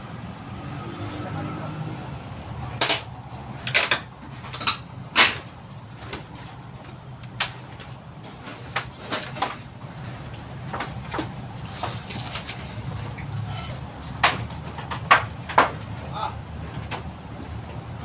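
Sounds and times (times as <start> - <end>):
sharp knocks and clanks: 10.6 - 16.1.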